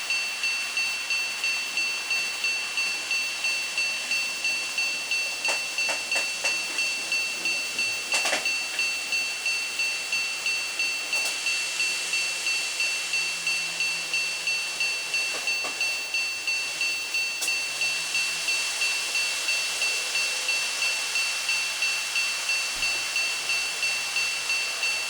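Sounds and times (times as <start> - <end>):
level-crossing warning bell ringing: 0.0 - 25.0
model train clicking and rattling: 5.4 - 8.9.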